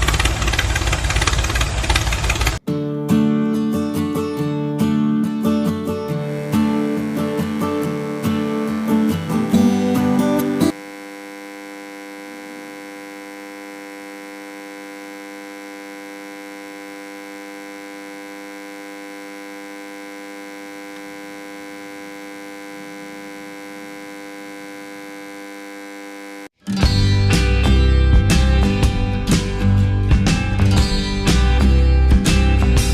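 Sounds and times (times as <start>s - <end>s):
guitar music: 2.6s - 10.8s, 26.6s - 32.9s
electrical hum: 6.1s - 26.5s.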